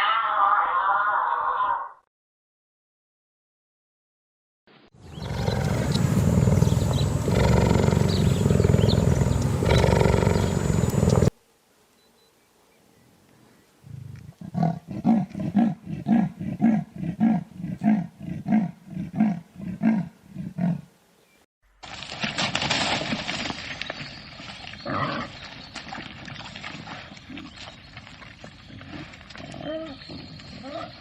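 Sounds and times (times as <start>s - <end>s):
harsh noisy animal sound: 5.1s - 11.3s.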